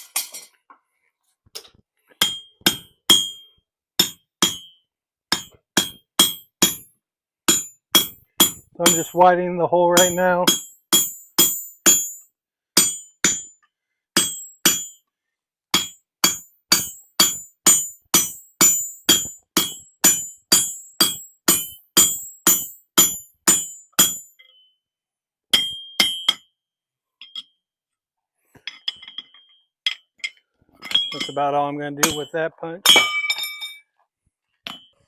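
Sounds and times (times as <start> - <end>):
hammer striking punch on anvil: 2.2 - 3.4, 4.0 - 6.8, 7.5 - 9.2, 10.0 - 12.2, 12.8 - 13.5, 14.2 - 15.0, 15.8 - 24.3, 32.0 - 33.4.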